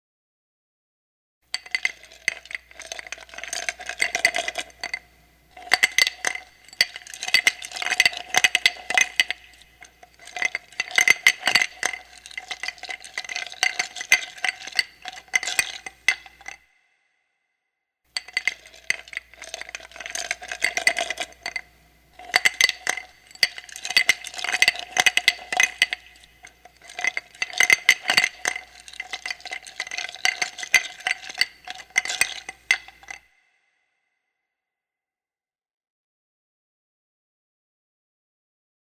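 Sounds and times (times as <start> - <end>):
ice cubes clinking in a glass: 1.5 - 16.6, 18.1 - 33.2.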